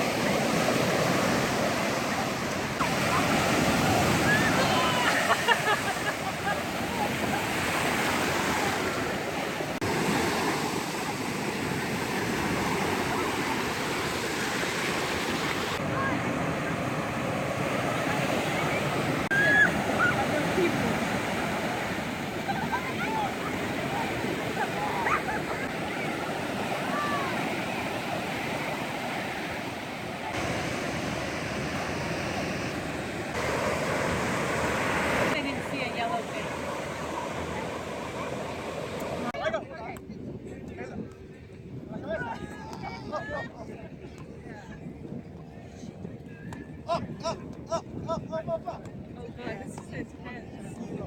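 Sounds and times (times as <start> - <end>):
ocean waves washing up beach: 0.0 - 39.4.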